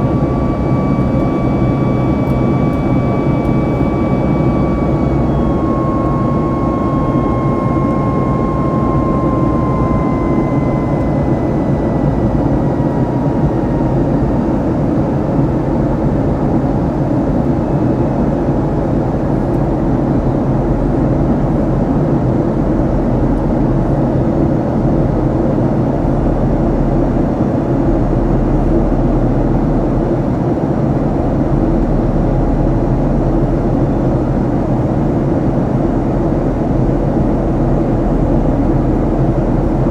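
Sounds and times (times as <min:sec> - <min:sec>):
thin high whine: 0:00.0 - 0:21.9
jet engine and airflow rush: 0:00.0 - 0:39.9.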